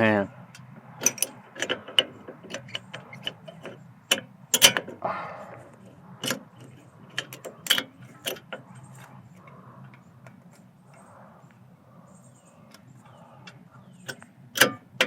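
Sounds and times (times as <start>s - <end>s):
metallic clicks of brake pad clips: 0.5s - 5.0s, 12.7s - 15.0s.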